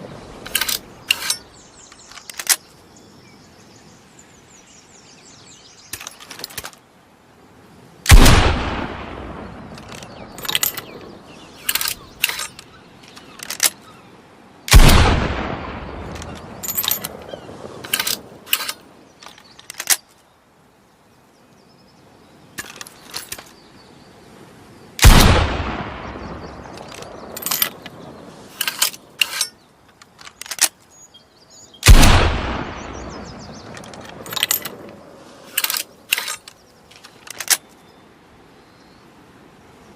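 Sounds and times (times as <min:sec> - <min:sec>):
gunshot blasts with echo: 0:08.1 - 0:09.3, 0:14.7 - 0:16.0, 0:25.0 - 0:26.5, 0:31.8 - 0:33.2.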